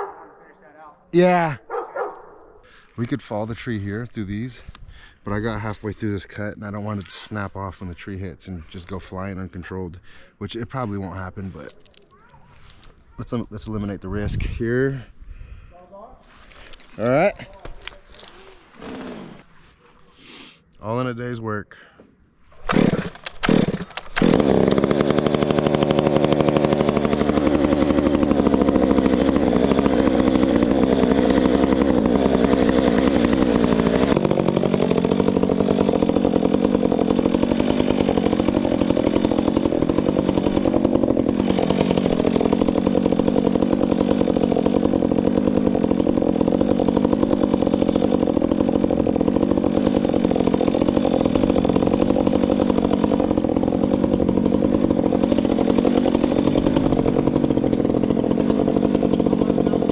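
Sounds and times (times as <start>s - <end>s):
chainsaw running at high speed: 3.0s - 9.8s, 16.7s - 19.4s, 22.7s - 59.9s.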